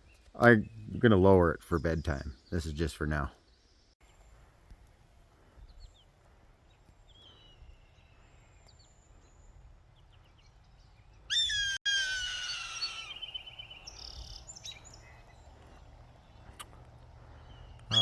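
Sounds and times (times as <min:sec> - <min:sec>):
small birds chirping: 0:00.0 - 0:04.8, 0:05.4 - 0:18.0
hawk call: 0:11.3 - 0:13.2.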